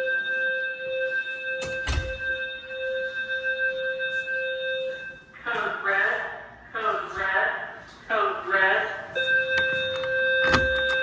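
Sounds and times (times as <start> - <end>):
fire alarm alert tone: 0.0 - 5.7, 9.1 - 11.0.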